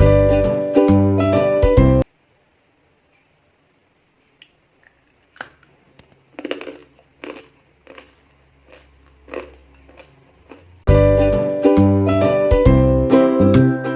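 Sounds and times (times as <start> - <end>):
peanut candy crunching: 5.2 - 10.8.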